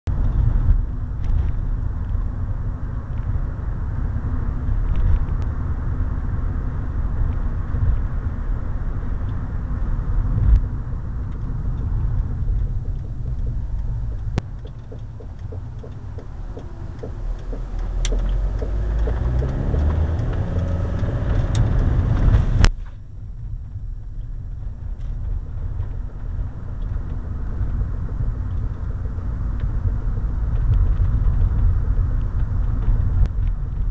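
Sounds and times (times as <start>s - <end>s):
road and engine rumble: 0.0s - 33.9s
rising whine: 4.6s - 22.8s
wheel knocking: 12.1s - 22.6s.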